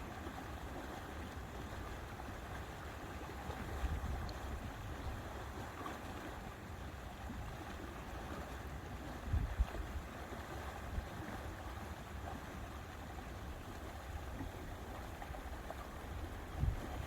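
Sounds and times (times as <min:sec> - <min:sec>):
wind and water rumble: 0:00.0 - 0:17.0
wind gusts buffeting microphone: 0:16.5 - 0:17.0.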